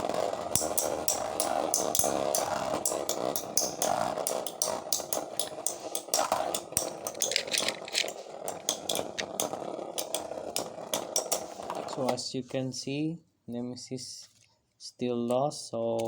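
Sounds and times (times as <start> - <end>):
spinning tops whirring: 0.0 - 12.2
tops clicking against each other: 0.5 - 11.8.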